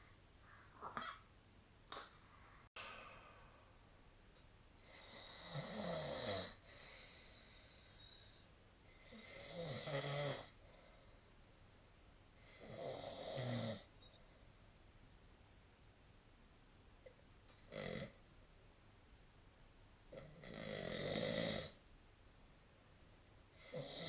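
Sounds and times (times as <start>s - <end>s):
person snoring: 4.8s - 7.2s, 9.0s - 10.5s, 12.5s - 13.9s, 20.2s - 21.8s, 23.6s - 24.0s.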